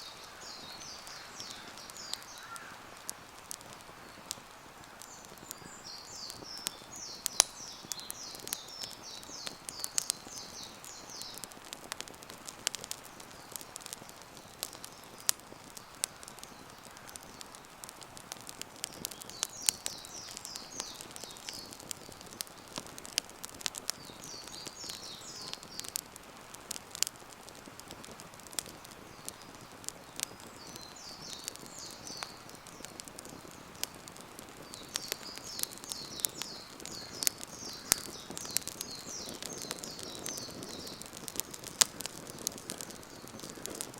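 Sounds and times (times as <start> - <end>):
bird chirping: 0.0 - 2.8, 4.0 - 11.5, 18.8 - 23.0, 23.9 - 26.0, 28.9 - 33.9, 34.6 - 43.7
campfire crackling: 0.0 - 43.9.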